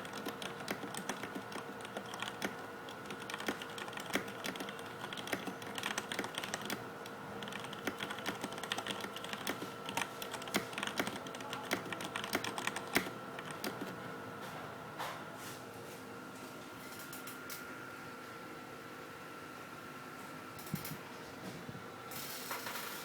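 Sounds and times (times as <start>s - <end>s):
mechanical keyboard typing: 0.0s - 14.0s.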